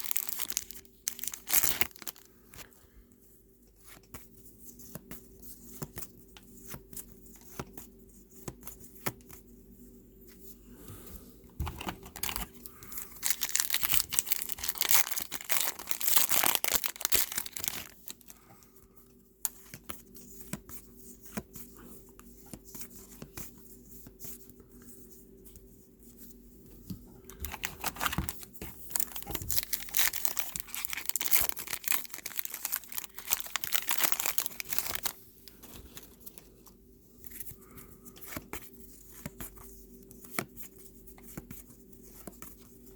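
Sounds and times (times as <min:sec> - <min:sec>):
wrappers torn and crinkled: 0:00.0 - 0:02.3, 0:11.8 - 0:18.3, 0:27.5 - 0:35.2.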